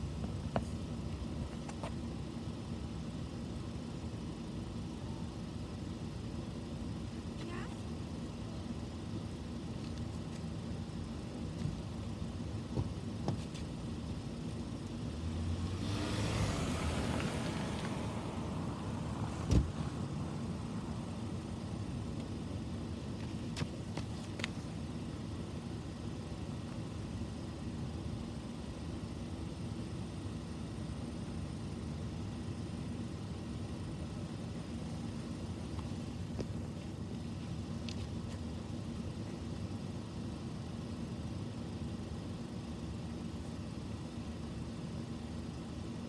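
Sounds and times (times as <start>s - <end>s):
car passing: 15.2s - 21.2s.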